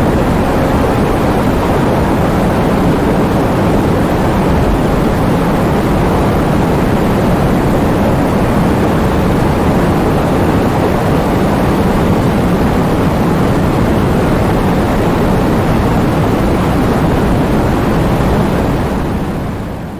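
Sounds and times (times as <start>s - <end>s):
heavy rain falling: 0.0s - 19.5s.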